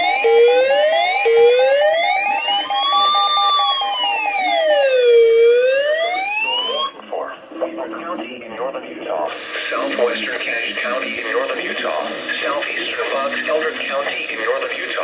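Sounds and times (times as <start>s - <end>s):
electronic siren wailing: 0.0s - 7.0s
steady high tone: 0.0s - 8.8s.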